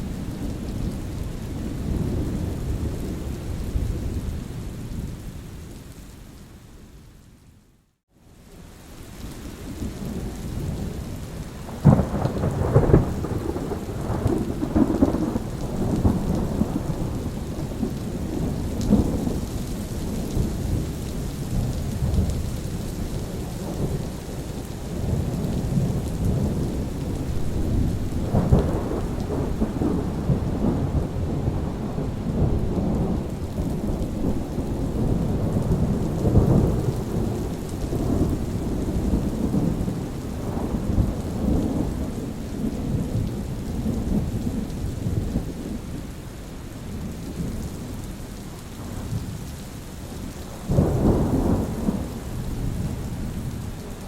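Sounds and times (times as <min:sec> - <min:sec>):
steady rain: 0:00.0 - 0:54.0
rolling low thunder: 0:11.7 - 0:46.0, 0:50.6 - 0:54.0
sharp thunderclap: 0:25.1 - 0:42.0.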